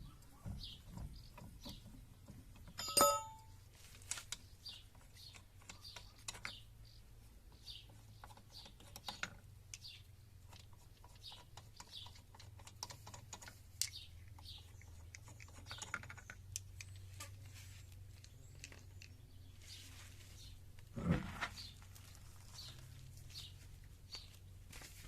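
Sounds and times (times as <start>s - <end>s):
hand tools and metal parts clinking: 2.5s - 4.4s.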